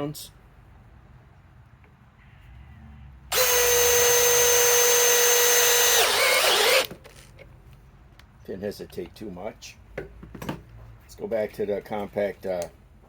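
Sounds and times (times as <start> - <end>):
drill driving screw into steel: 3.3 - 6.9.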